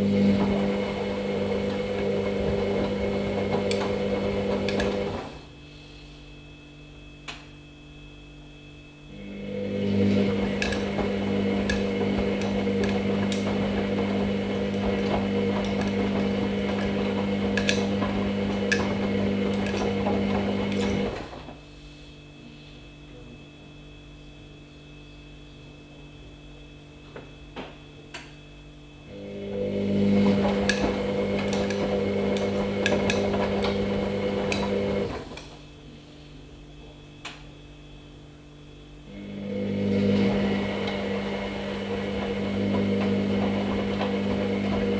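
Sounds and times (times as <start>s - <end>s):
washing machine drum turning: 0.0s - 5.4s, 9.5s - 21.6s, 29.6s - 35.6s.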